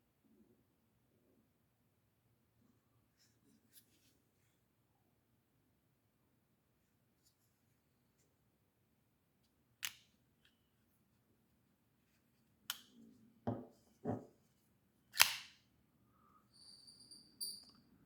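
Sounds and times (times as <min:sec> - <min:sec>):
pocket knife blade clicking: 0:15.2 - 0:15.5.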